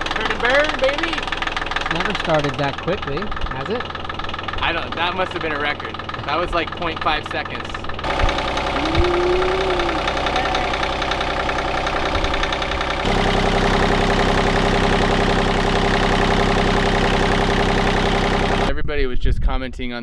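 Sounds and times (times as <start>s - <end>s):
boat engine idling with knocking: 0.0s - 2.6s, 8.1s - 18.7s.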